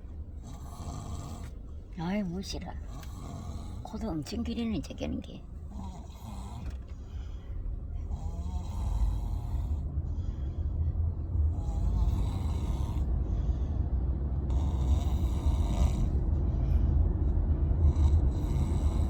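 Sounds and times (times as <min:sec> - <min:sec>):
child snoring heavily: 0:00.4 - 0:01.5, 0:02.9 - 0:04.0, 0:05.7 - 0:06.8, 0:08.0 - 0:09.8, 0:11.5 - 0:13.1, 0:14.5 - 0:16.2, 0:17.8 - 0:19.0.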